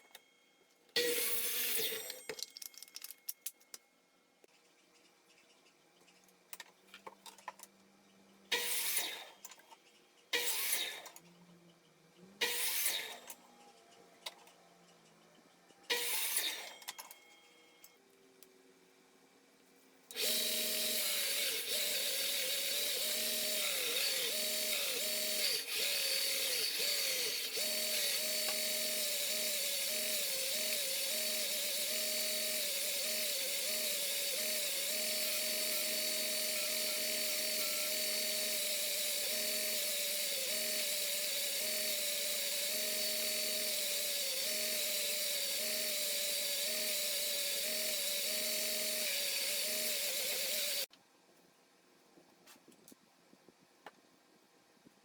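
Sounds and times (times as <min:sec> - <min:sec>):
electric power tool running: 0:20.1 - 0:50.9.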